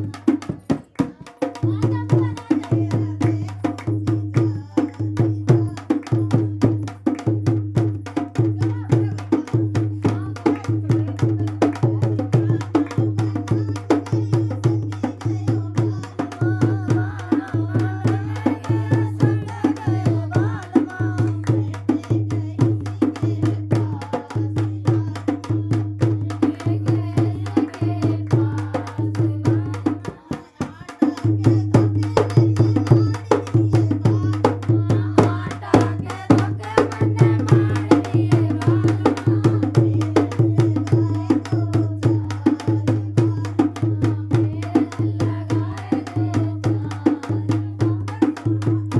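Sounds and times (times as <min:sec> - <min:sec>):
fast hand-drum percussion: 0:00.0 - 0:48.9.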